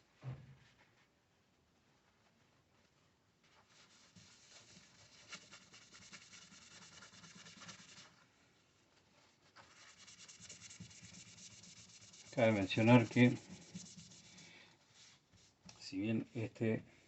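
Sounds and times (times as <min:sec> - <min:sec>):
cloth rubbing metal surface: 0:02.8 - 0:08.2, 0:09.1 - 0:15.6.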